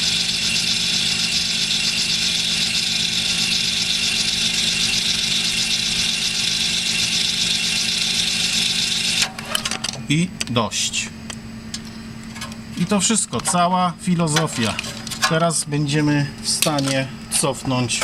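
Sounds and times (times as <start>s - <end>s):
electric motor whirring: 0.0s - 9.3s.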